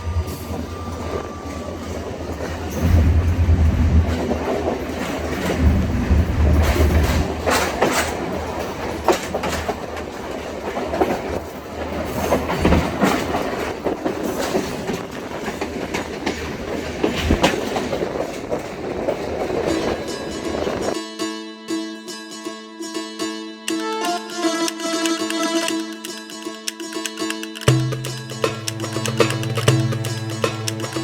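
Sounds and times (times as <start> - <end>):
train rumbling on track: 0.0 - 21.0, 27.7 - 31.0
wheels clacking over rail joints: 0.0 - 21.0, 26.1 - 31.0.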